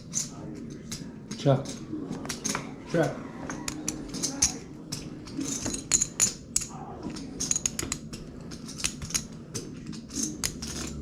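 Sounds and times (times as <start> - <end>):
poker chips and cards clacking: 3.7 - 11.0.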